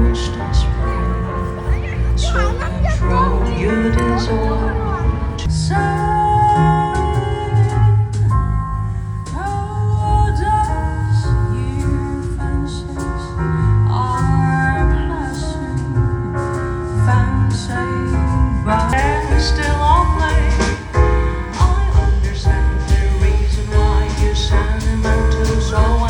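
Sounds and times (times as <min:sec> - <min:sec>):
steady drum beat: 0:00.0 - 0:05.5, 0:19.0 - 0:26.0
person singing lead vocal: 0:00.0 - 0:08.4, 0:17.0 - 0:26.0
live band playing: 0:00.0 - 0:10.8
heavy bass: 0:00.0 - 0:26.0
keyboard chords: 0:00.0 - 0:26.0.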